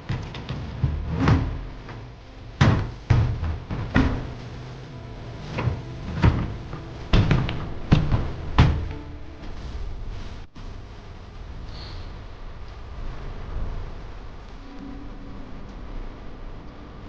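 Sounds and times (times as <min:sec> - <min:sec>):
irregular knocks and thuds: 0:00.0 - 0:10.5.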